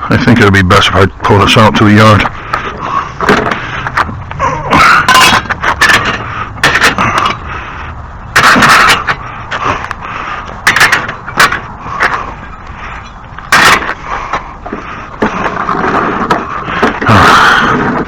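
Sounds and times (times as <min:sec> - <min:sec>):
lawn mower rolling on hard floor: 0:15.2 - 0:18.0.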